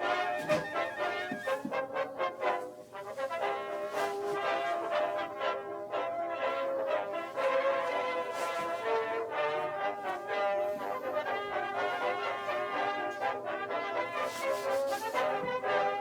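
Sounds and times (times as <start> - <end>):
brass music: 0.0 - 16.0.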